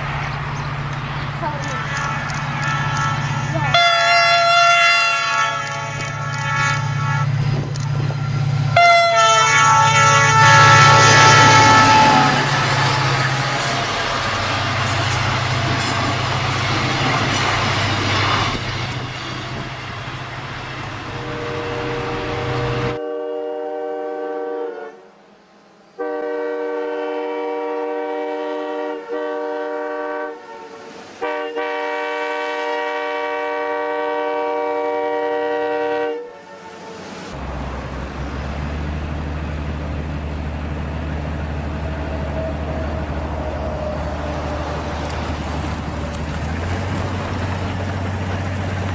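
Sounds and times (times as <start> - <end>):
low engine drone: 0.0 - 4.5, 5.6 - 23.0, 37.4 - 48.9
train rumbling: 0.0 - 23.0, 27.7 - 48.9
train horn chord: 0.0 - 37.3.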